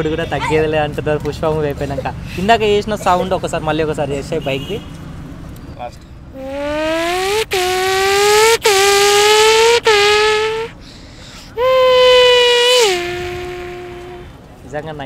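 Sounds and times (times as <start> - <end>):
boy imitating engine with voice: 6.4 - 10.8, 11.5 - 14.3.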